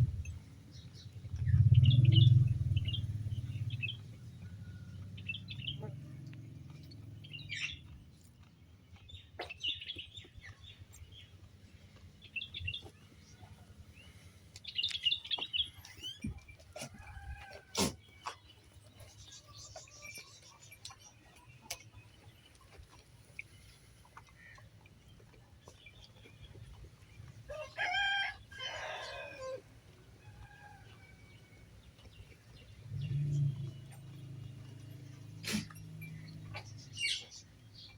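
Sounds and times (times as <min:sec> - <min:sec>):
low rumble: 0:00.0 - 0:07.5
small birds chirping: 0:00.0 - 0:37.9.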